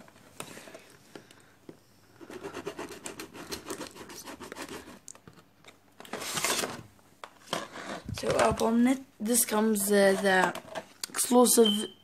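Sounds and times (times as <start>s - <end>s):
packaging scratching and rubbing: 6.0s - 6.8s.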